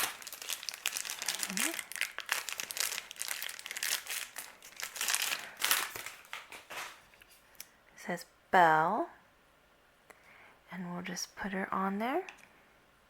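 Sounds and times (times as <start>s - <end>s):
packaging crinkling: 0.0s - 7.7s.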